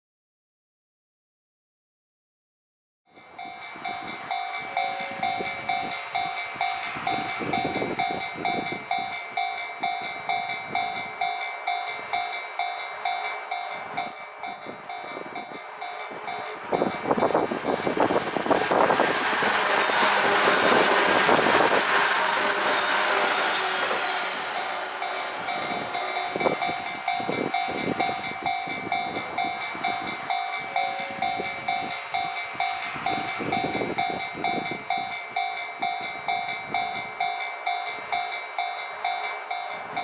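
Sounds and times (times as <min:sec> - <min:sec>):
electric train rushing past: 0:03.2 - 0:40.0
train wheels clattering on rail joints: 0:03.4 - 0:40.0
level crossing bell dinging: 0:03.9 - 0:19.9, 0:23.7 - 0:40.0.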